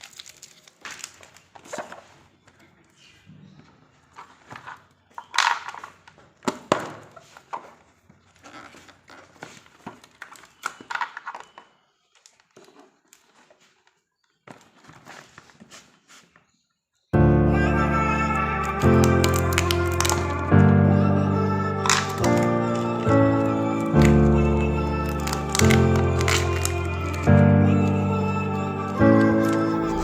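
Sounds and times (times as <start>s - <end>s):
packaging crinkling: 0.0s - 2.5s, 21.4s - 30.0s
music: 17.2s - 30.0s.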